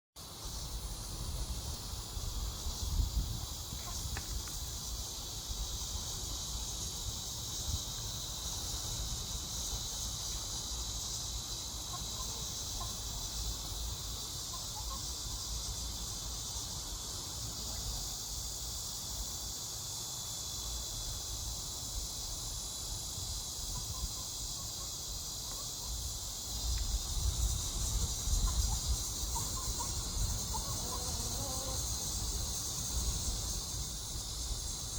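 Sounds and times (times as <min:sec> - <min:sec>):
high-pitched insect chorus: 0:00.2 - 0:34.9
wind rumble on microphone: 0:00.6 - 0:05.1, 0:26.6 - 0:31.0.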